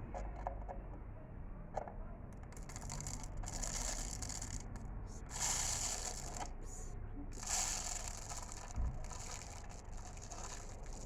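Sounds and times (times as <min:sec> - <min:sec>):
rice grains pouring: 0:02.7 - 0:04.7, 0:05.3 - 0:06.6, 0:07.4 - 0:11.0.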